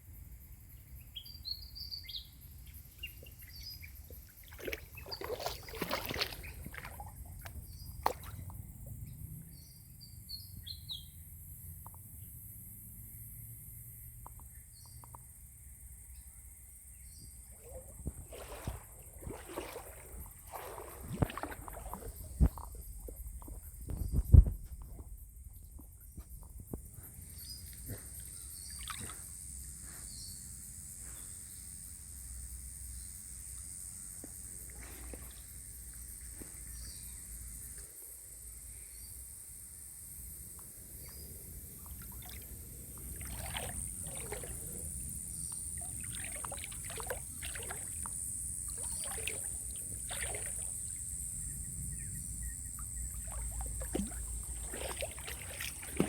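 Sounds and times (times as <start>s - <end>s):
creek water splashing: 2.8s - 9.6s, 17.1s - 29.5s, 34.1s - 36.9s, 40.8s - 56.0s.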